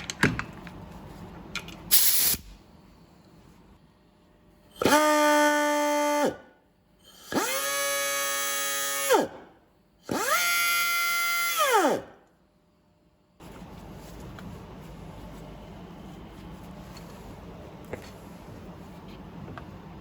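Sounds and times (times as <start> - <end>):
pneumatic grinder motor whining: 7.2 - 9.4, 10.1 - 12.1.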